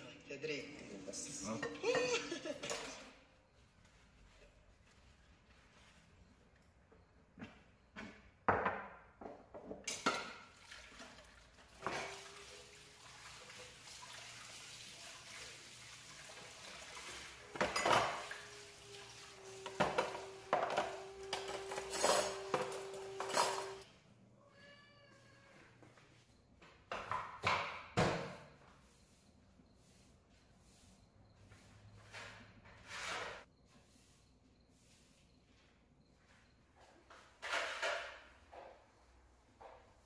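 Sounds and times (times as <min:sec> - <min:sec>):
dishes and cutlery clattering: 0:01.6 - 0:03.2, 0:09.8 - 0:10.5, 0:17.4 - 0:18.5, 0:19.6 - 0:23.8
water running in sink: 0:10.5 - 0:23.8.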